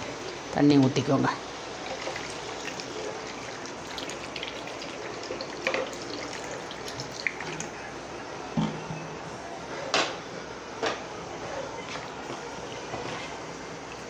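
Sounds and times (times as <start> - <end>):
water hissing in hot pan: 0.0 - 7.6.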